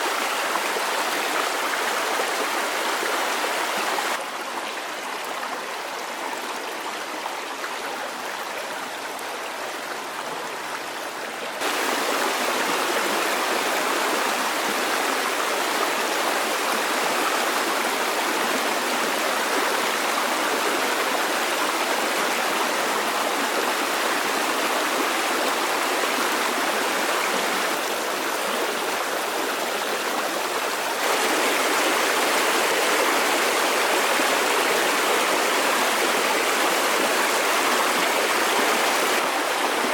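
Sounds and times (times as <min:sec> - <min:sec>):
flowing water rushing: 0:00.0 - 0:39.9.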